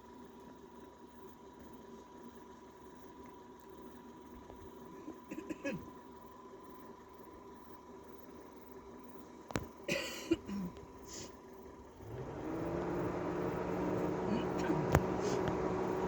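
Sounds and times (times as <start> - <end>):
engine running: 11.8 - 16.0.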